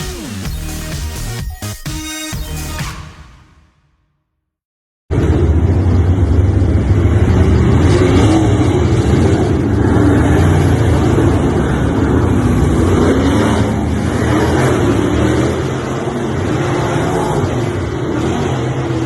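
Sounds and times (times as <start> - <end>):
motor vehicle running: 5.1 - 19.0.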